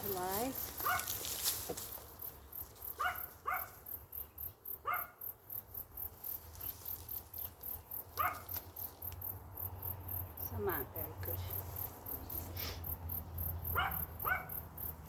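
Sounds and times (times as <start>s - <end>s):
insects chirping: 0.0s - 15.0s
dog yipping: 0.8s - 1.1s, 3.0s - 3.7s, 4.8s - 5.1s, 8.2s - 8.4s, 13.7s - 14.6s.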